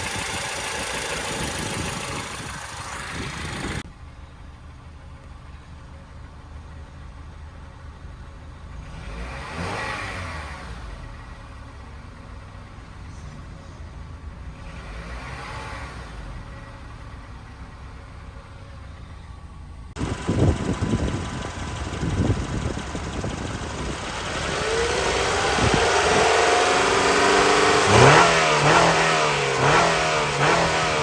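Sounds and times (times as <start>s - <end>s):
car engine running: 0.0s - 5.2s, 17.0s - 31.0s.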